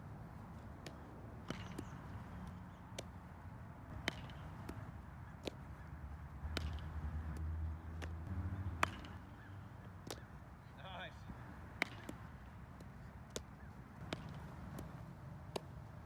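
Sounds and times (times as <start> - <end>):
baseball smacking into glove: 3.9 - 4.8, 11.8 - 12.3, 13.3 - 15.8.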